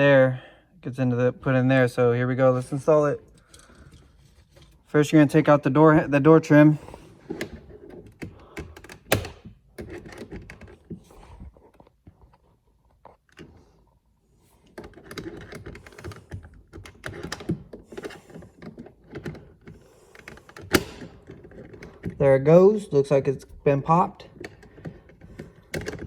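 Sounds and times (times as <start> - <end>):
plastic trim clicking and knocking: 7.3 - 10.9, 14.7 - 22.2, 24.3 - 26.0.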